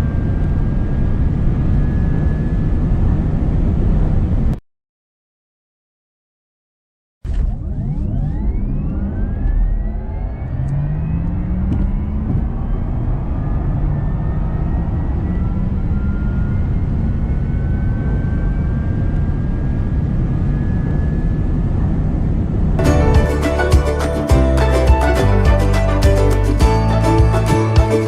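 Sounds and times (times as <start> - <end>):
wind and road noise: 0.0 - 4.6, 7.3 - 23.2.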